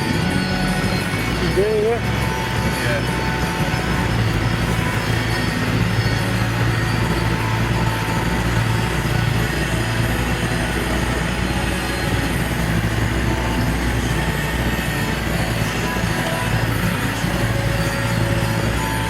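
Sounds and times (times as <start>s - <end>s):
vehicle engine running at low revs: 0.0s - 19.0s.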